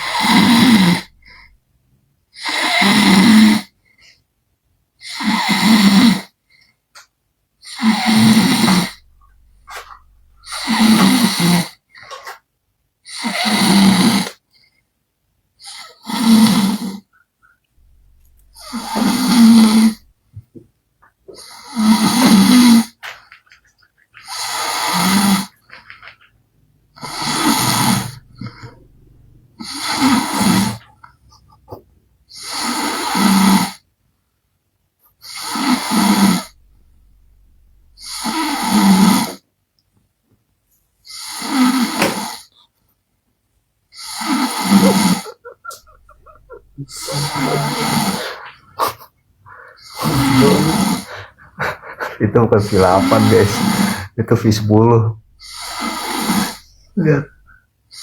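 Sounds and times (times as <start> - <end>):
man snoring loudly: 0.0 - 1.5, 2.4 - 3.7, 5.1 - 6.3, 7.7 - 11.7, 13.1 - 14.4, 15.7 - 17.0, 17.8 - 20.1, 21.4 - 23.0, 24.3 - 25.6, 27.0 - 30.9, 32.3 - 33.8, 35.3 - 39.4, 41.1 - 42.5, 44.0 - 48.6, 49.5 - 58.0.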